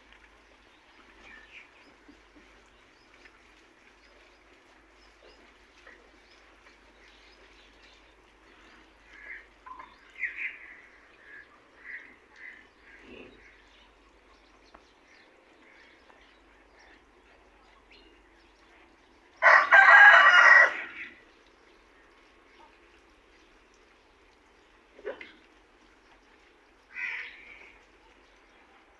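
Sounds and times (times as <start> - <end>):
rooster crowing: 19.4 - 21.0.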